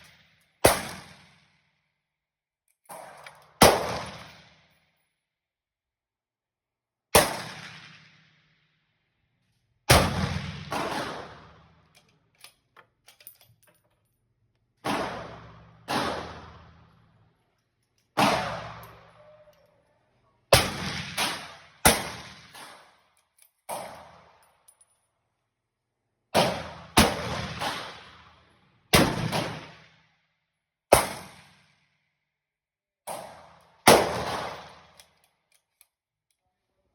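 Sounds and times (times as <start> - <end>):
rifle shots echoing: 0.0 - 1.6, 2.9 - 4.7, 7.2 - 8.2, 9.9 - 11.9, 14.8 - 17.1, 18.2 - 19.4, 20.5 - 23.0, 26.4 - 29.9, 33.1 - 35.0.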